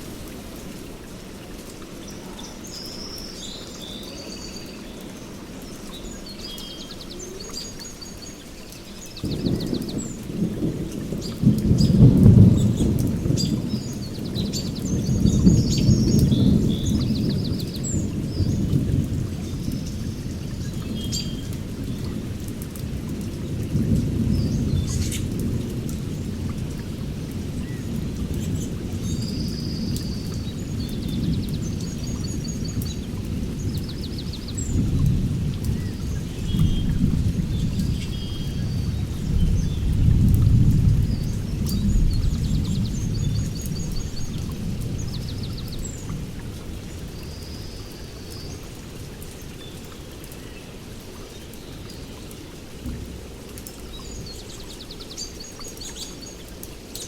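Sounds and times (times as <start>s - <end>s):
steady rain: 0.0s - 57.0s
low rolling thunder: 9.2s - 47.7s.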